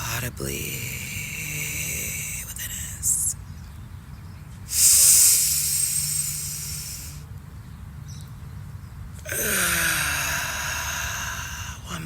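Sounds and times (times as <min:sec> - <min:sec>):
woman exhaling loudly: 0:04.7 - 0:07.2, 0:09.3 - 0:11.8.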